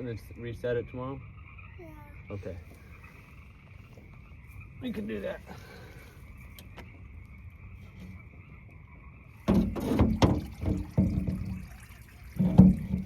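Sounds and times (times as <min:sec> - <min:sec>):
frogs calling: 0:00.0 - 0:13.0
water splashes and clunks: 0:09.4 - 0:13.0.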